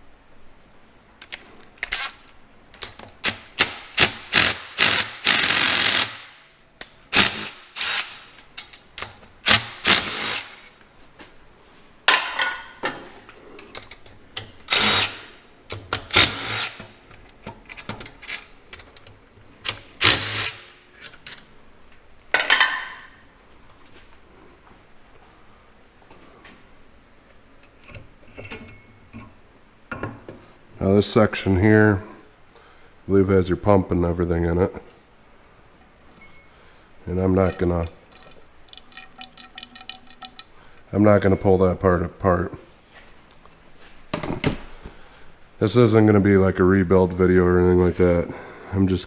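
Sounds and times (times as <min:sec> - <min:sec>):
handheld power tool bursts: 0:03.2 - 0:06.4, 0:07.1 - 0:08.3, 0:09.4 - 0:10.7, 0:14.7 - 0:15.3, 0:16.1 - 0:16.9, 0:20.0 - 0:20.7.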